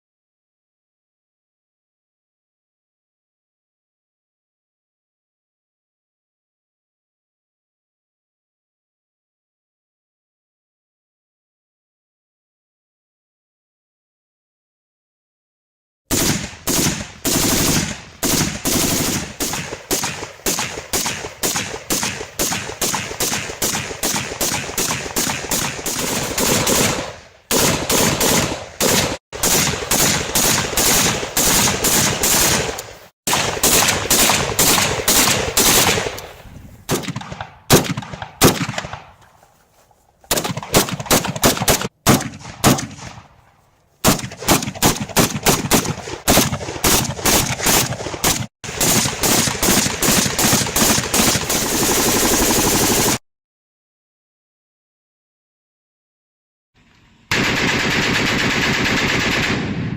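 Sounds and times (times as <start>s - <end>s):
automatic rifle firing: 16.1s - 39.2s, 40.3s - 43.3s, 44.0s - 53.2s, 57.3s - 59.9s.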